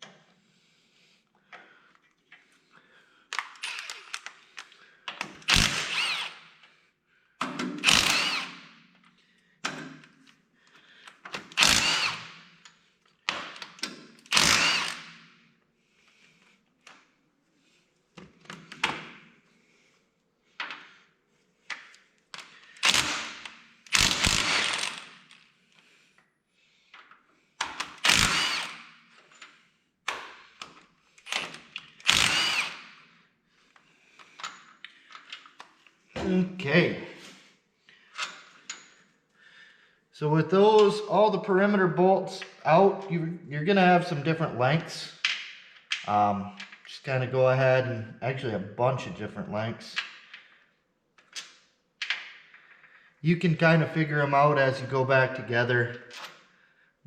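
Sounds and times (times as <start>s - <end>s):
power driver removing bolts: 3.3s - 4.3s, 7.5s - 8.6s, 11.3s - 12.4s, 13.3s - 15.1s, 22.4s - 25.2s, 27.6s - 28.8s, 30.1s - 32.9s.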